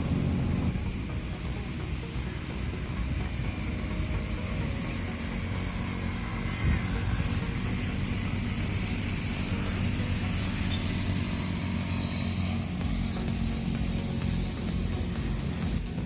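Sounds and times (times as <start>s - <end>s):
low engine rumble: 0.0s - 16.0s.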